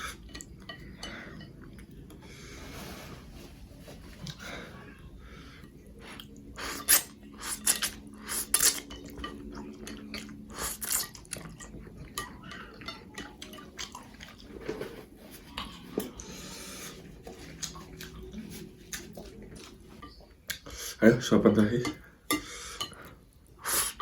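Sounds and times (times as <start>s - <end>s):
person chewing noodles: 4.2s - 20.8s.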